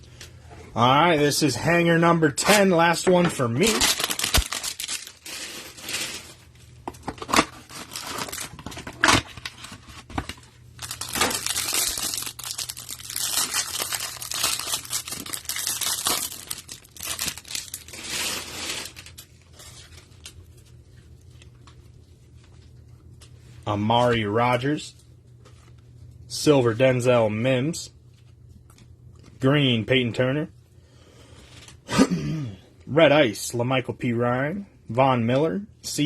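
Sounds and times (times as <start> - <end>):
cardboard tearing: 3.6 - 6.4, 7.2 - 19.8
plastic wrapping crinkling: 3.6 - 23.3.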